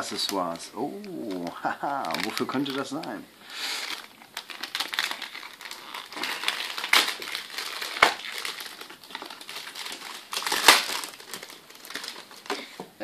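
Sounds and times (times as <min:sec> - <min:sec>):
packaging crackles: 0:00.0 - 0:13.0
packaging crinkling and rustling: 0:00.0 - 0:13.0.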